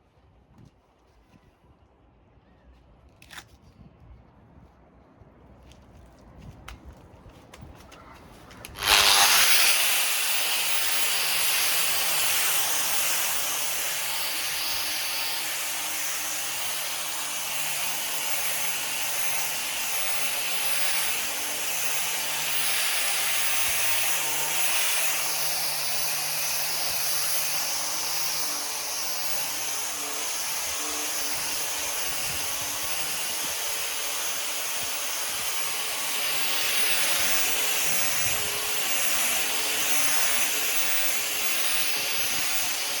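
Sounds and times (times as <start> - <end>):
orbital sander on wood: 8.7 - 43.0.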